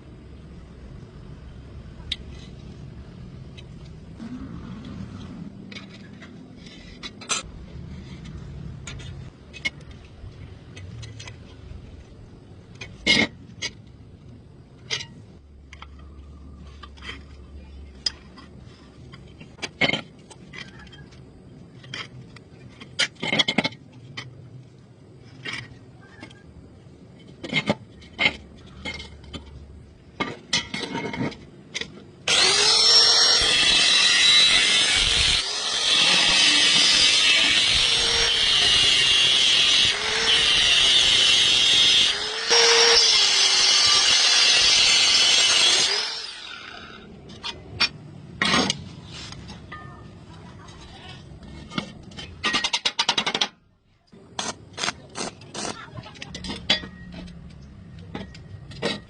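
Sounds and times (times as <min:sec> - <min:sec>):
power tool running: 0:32.3 - 0:47.0.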